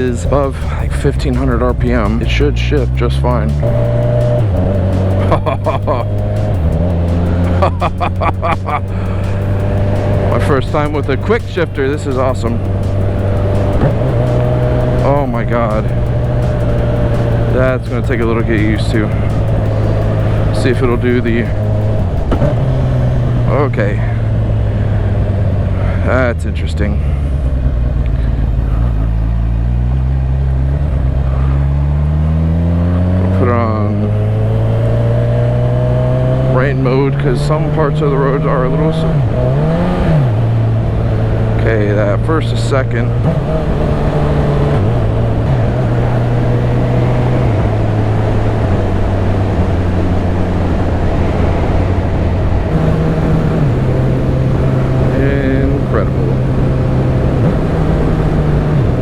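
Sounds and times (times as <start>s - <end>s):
motorcycle engine accelerating: 0.0s - 59.0s
wind noise: 42.8s - 59.0s.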